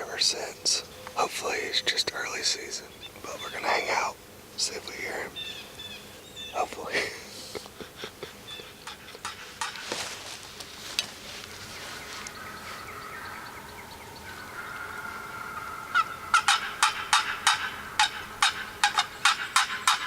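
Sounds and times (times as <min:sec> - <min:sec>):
turkey yelps: 0:12.7 - 0:20.0.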